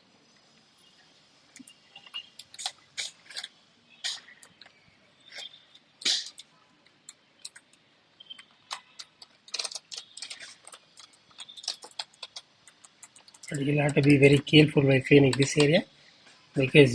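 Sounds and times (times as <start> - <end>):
keyboard keys clicking and rattling: 8.4 - 14.6.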